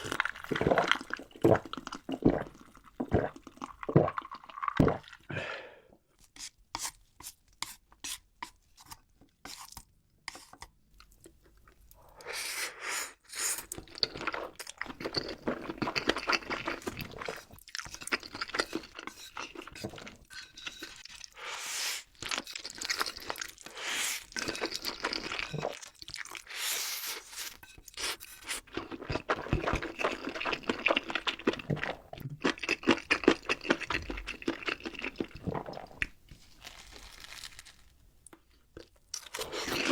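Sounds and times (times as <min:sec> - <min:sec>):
person chewing crunchy food: 0:00.0 - 0:05.3, 0:13.6 - 0:37.9, 0:38.8 - 0:39.9.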